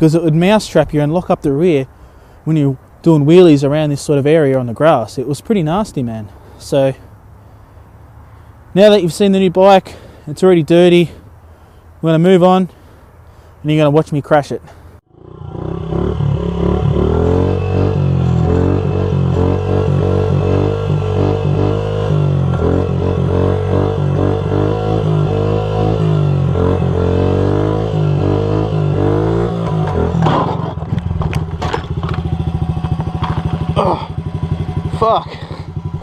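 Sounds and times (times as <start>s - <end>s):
small motorcycle engine running: 15.1s - 36.0s
music with low drone: 15.2s - 27.0s.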